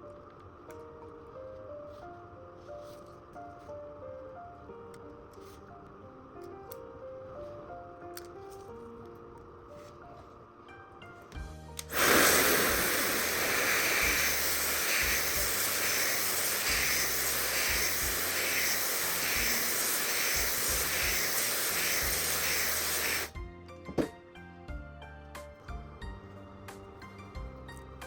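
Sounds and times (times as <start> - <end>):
soft background music: 0.0 - 28.0
hiss of rushing air: 11.9 - 23.3.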